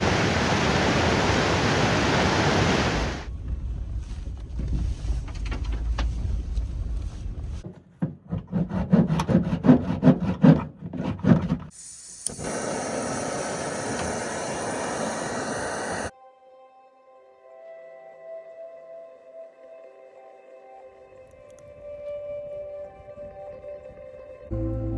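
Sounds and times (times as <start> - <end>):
steady rushing noise: 12.3 - 16.1.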